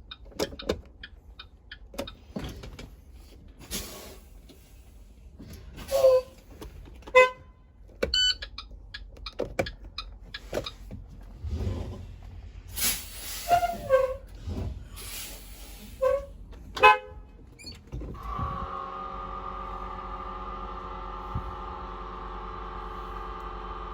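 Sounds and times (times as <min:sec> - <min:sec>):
bus horn toots: 0:05.8 - 0:06.4, 0:07.1 - 0:07.6, 0:13.4 - 0:14.2, 0:16.0 - 0:17.4, 0:18.2 - 0:23.9
low rumble: 0:11.0 - 0:15.8, 0:16.4 - 0:23.2
hiss bursts: 0:12.7 - 0:13.9.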